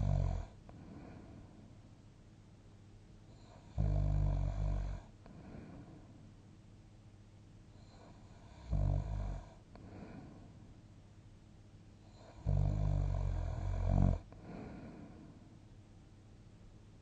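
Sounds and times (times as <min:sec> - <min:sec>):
person snoring: 0:00.0 - 0:01.4, 0:03.4 - 0:05.9, 0:12.1 - 0:15.3
quiet out-breath: 0:00.7 - 0:01.9, 0:05.2 - 0:06.2, 0:09.7 - 0:10.8, 0:14.3 - 0:15.6.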